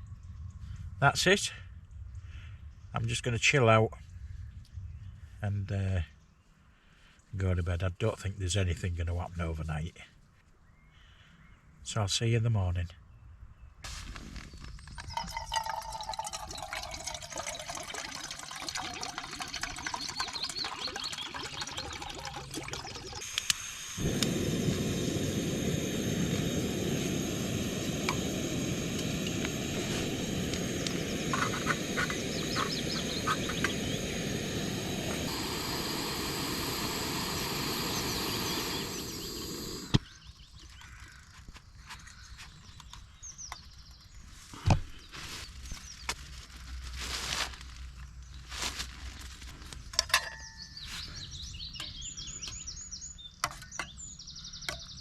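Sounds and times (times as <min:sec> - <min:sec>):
birds calling: 0:14.5 - 0:46.1, 0:50.3 - 0:55.0
flowing water: 0:15.0 - 0:40.0.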